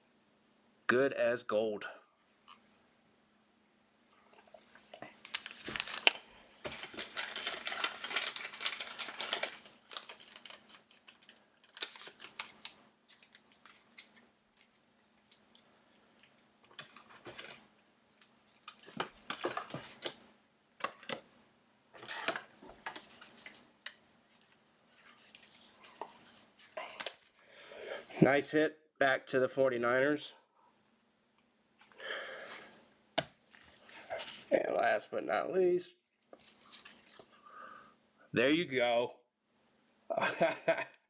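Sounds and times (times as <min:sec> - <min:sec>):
faint steady hum: 0:00.0 - 0:41.0
plastic packaging rustling: 0:05.1 - 0:21.2, 0:31.8 - 0:34.6, 0:36.1 - 0:37.3.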